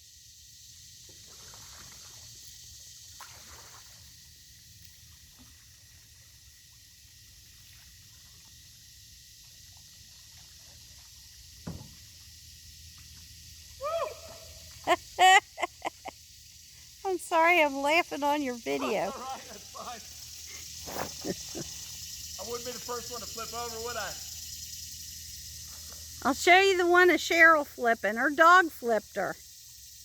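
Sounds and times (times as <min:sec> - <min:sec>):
paddle splashing water: 0:01.1 - 0:15.2.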